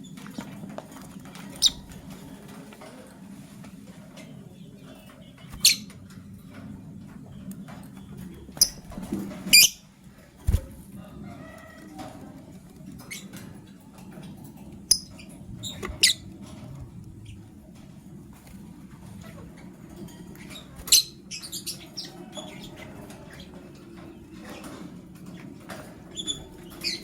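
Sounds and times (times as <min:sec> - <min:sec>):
birds chirping high-pitched: 0:01.3 - 0:02.5, 0:04.1 - 0:10.7, 0:12.8 - 0:17.9, 0:18.8 - 0:27.0.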